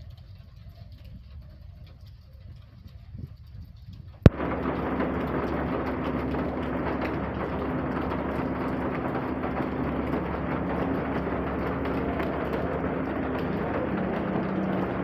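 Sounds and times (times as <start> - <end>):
faint low hum: 0.0 - 15.0
steady rain: 0.0 - 15.0.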